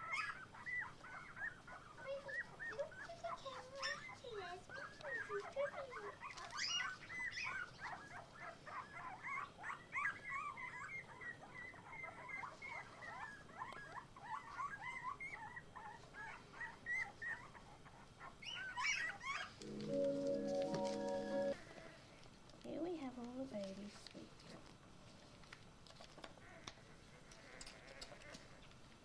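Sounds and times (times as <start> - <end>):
puppies whining and squeaking: 0.0 - 21.6
music: 19.6 - 21.6.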